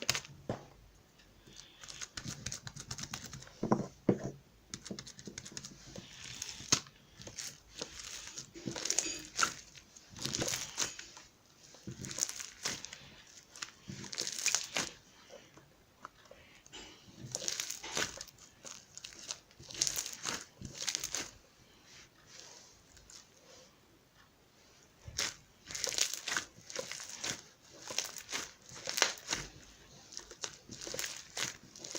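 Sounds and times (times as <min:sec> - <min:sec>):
slime crackling and popping: 0:04.8 - 0:11.2, 0:11.9 - 0:15.0, 0:17.2 - 0:21.4, 0:25.0 - 0:31.9.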